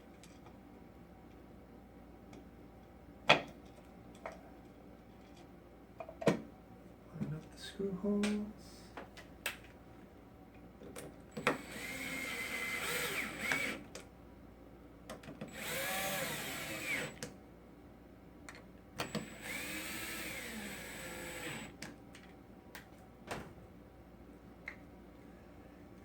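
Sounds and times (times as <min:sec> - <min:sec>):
cordless drill driving screws: 0:11.4 - 0:13.8, 0:15.5 - 0:17.2, 0:19.0 - 0:21.8.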